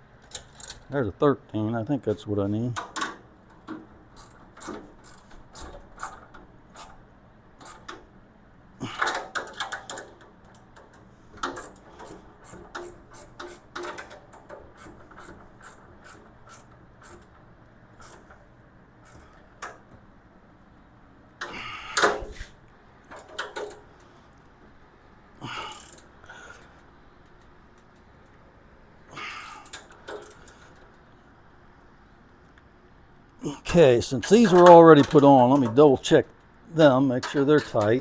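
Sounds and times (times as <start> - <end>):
wrench clicking on bolts: 2.8 - 7.0, 7.6 - 8.0, 8.9 - 17.4, 34.2 - 36.1.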